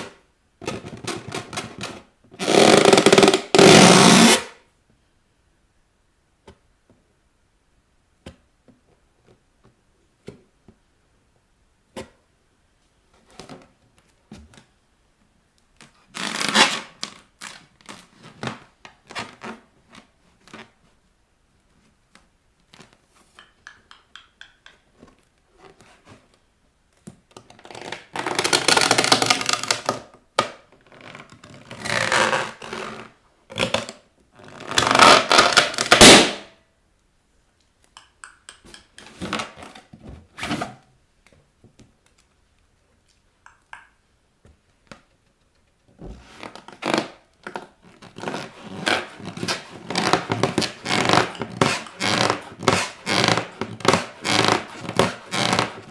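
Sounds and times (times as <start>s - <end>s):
rubber balloons squeaking: 2.4s - 4.4s, 16.2s - 18.4s, 46.1s - 55.9s.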